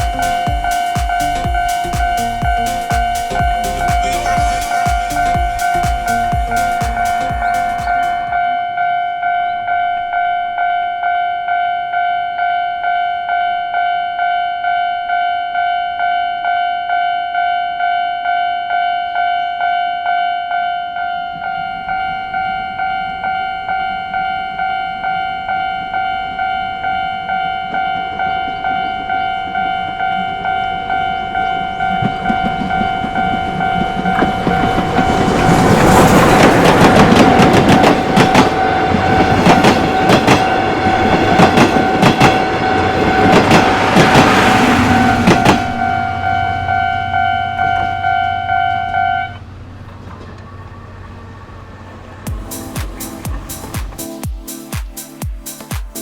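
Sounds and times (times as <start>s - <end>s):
level crossing bell ringing: 0.0s - 11.3s
train wheels clattering on rails: 27.3s - 46.4s.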